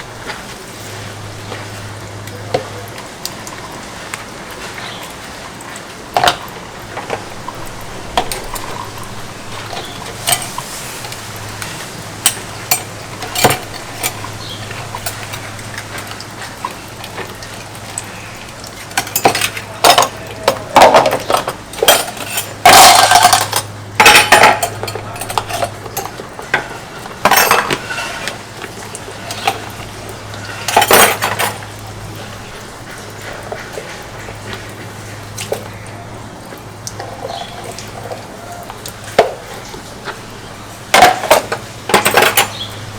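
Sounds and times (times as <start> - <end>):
dishes and cutlery clattering: 6.2 - 18.2, 18.8 - 35.8, 36.9 - 40.2, 40.9 - 42.8.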